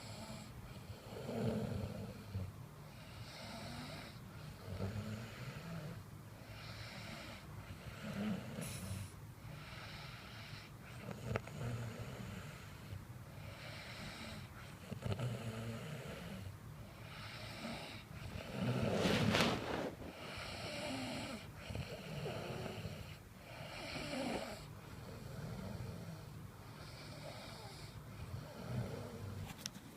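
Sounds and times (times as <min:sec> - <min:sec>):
breathy hiss: 0:02.0 - 0:11.1, 0:15.9 - 0:29.4
person snoring: 0:13.5 - 0:29.4.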